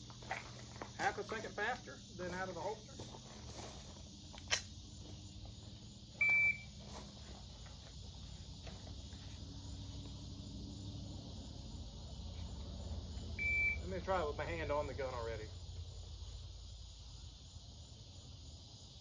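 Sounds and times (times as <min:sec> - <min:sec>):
sharp click: 0:04.4 - 0:04.7
shot timer start beep: 0:06.2 - 0:06.7, 0:13.4 - 0:13.8.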